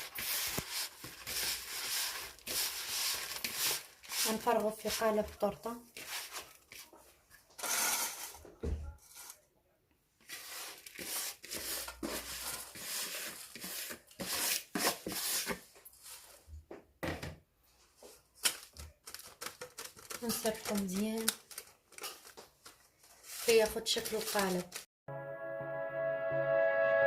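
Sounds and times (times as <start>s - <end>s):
utensil scraping a bowl: 0.0s - 5.2s, 10.2s - 15.6s.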